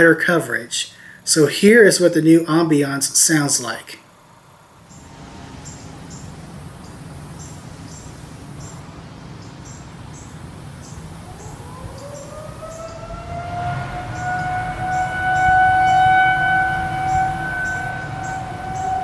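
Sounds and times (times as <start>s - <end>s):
insects chirping: 0.0s - 19.0s
low outdoor rumble: 4.8s - 19.0s
warning siren winding up: 10.2s - 19.0s.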